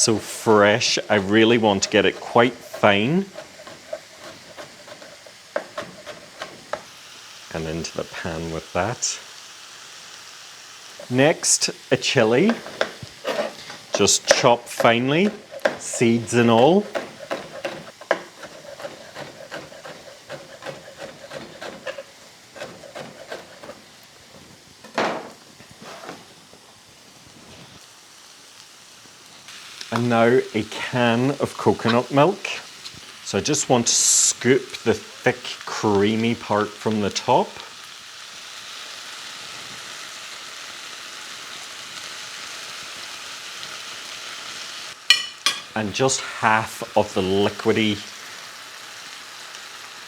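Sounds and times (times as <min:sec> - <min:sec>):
vegetables sizzling in a pan: 0:00.0 - 0:50.0
knife chopping on board: 0:03.4 - 0:06.9, 0:12.5 - 0:15.9, 0:16.6 - 0:23.8.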